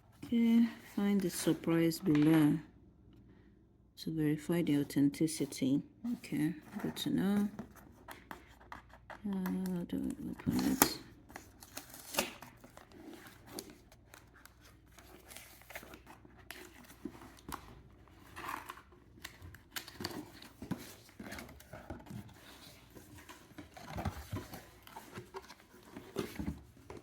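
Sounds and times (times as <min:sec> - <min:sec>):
tape tearing: 0:10.5 - 0:12.9.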